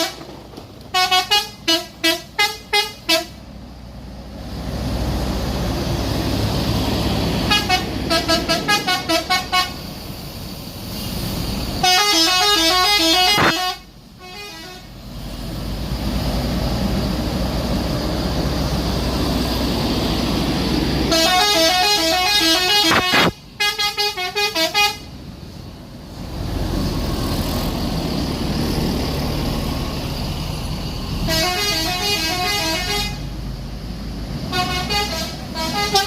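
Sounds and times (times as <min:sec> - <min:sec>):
bus engine running: 0:00.0 - 0:36.0
air horns playing a melody: 0:00.9 - 0:03.3, 0:07.4 - 0:09.8, 0:11.8 - 0:14.9, 0:21.1 - 0:25.1, 0:31.3 - 0:33.3, 0:34.5 - 0:36.0.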